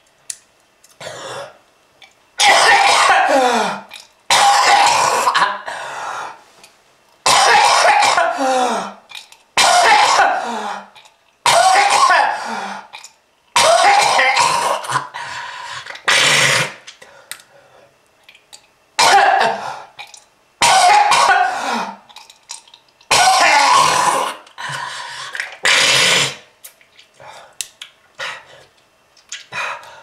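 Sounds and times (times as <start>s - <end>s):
person coughing: 2.4s - 5.8s, 7.3s - 9.0s, 9.6s - 10.9s, 11.5s - 12.6s, 13.6s - 15.1s, 19.0s - 19.8s, 20.6s - 22.0s, 23.1s - 24.4s.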